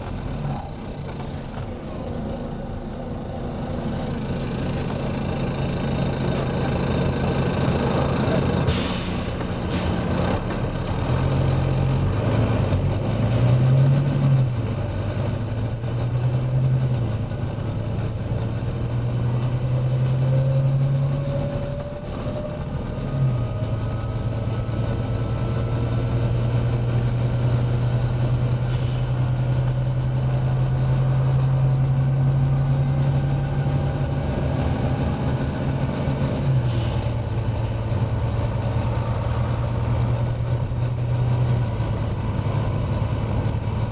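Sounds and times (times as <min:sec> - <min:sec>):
bus diesel engine: 0:00.0 - 0:43.9
short air hisses: 0:08.7 - 0:10.1, 0:36.7 - 0:37.2.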